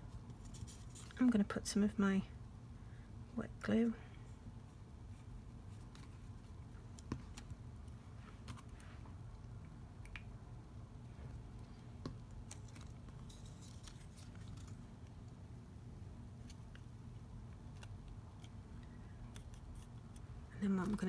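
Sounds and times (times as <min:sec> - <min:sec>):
low steady hum: 0:00.0 - 0:21.0
paper rustling: 0:12.6 - 0:14.9.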